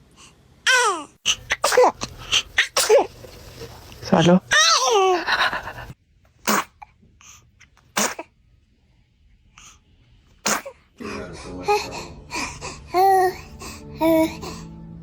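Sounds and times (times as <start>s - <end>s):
baby sneezing: 0.7s - 3.3s, 4.5s - 6.8s, 7.9s - 8.3s, 10.4s - 10.8s
person speaking: 1.5s - 5.9s, 11.0s - 12.6s.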